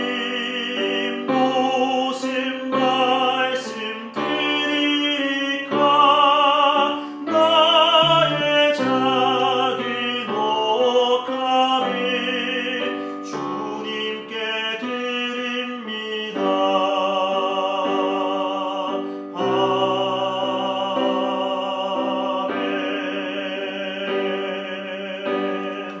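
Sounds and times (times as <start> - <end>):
musical accompaniment: 0.0 - 15.0
operatic singing of a hymn: 0.0 - 26.0.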